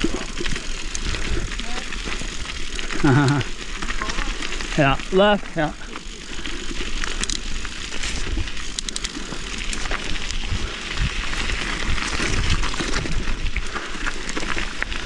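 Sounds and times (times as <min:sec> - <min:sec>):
bike knocking and rattling: 0:00.0 - 0:15.0
bike tyres crunching on gravel: 0:00.0 - 0:15.0
wind on microphone: 0:09.7 - 0:13.5.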